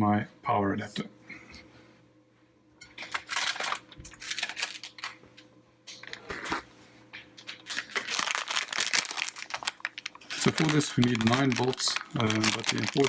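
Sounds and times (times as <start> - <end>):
rummaging rustling: 7.5 - 13.0.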